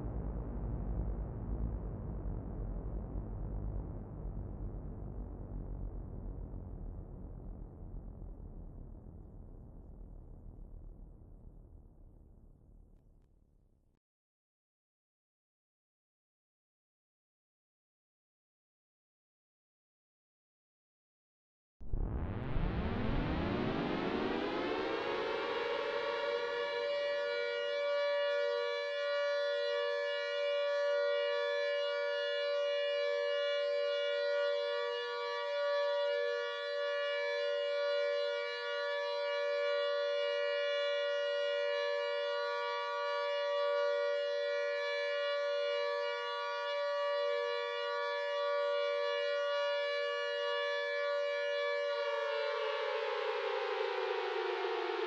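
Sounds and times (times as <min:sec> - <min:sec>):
air-raid siren wailing: 0:22.2 - 0:55.0.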